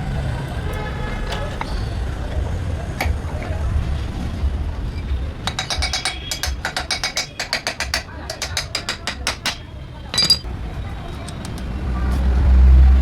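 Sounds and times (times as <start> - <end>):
metal clank: 5.0 - 10.5.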